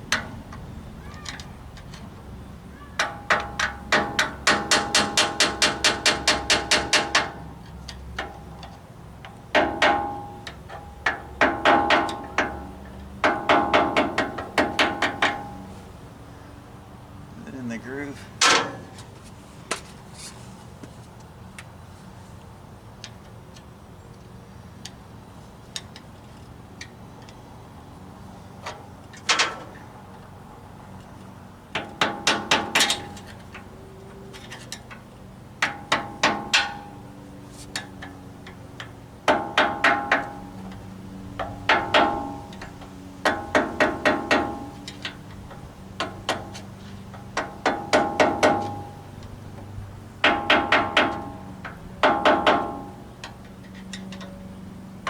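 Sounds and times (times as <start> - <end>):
hammer tapping on metal: 3.0 - 7.4, 9.5 - 15.6, 35.6 - 36.9, 39.3 - 40.8, 41.4 - 46.6, 47.2 - 49.1, 50.2 - 53.4.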